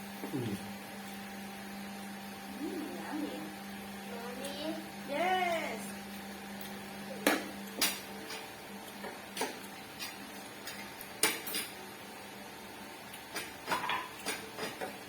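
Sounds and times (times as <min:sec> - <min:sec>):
utensils clinking against dishes: 0:13.4 - 0:15.0.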